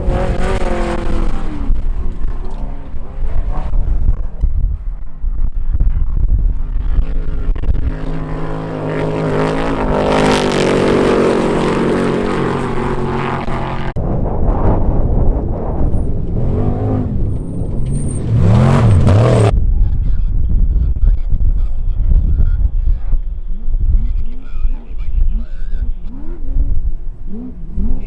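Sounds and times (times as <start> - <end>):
race vehicle engine revving: 0.0 - 14.0, 15.6 - 19.5, 24.8 - 28.0.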